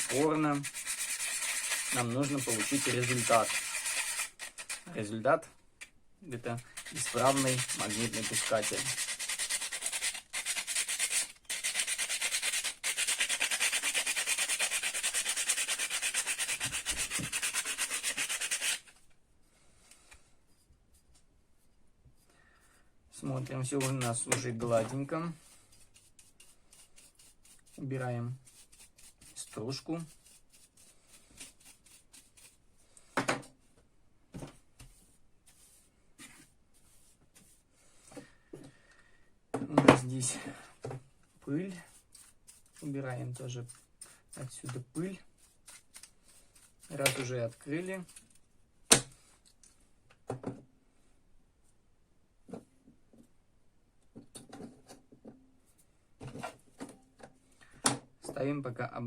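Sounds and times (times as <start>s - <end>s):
sandpaper rubbing on metal: 0.0s - 4.9s, 6.8s - 18.9s
knocks and scrapes from handling parts: 54.1s - 55.4s, 56.2s - 58.1s.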